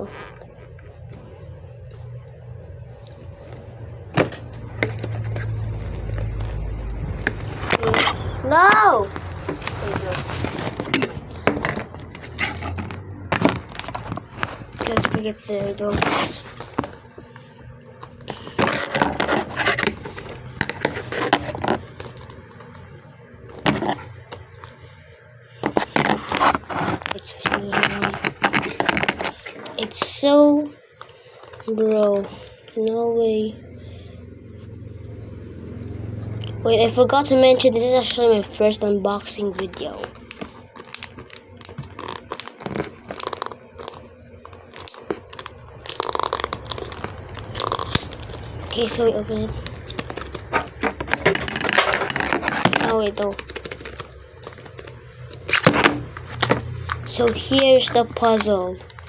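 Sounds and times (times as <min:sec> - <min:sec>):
hands crackling packaging: 0:04.2 - 0:22.9, 0:38.0 - 0:59.0.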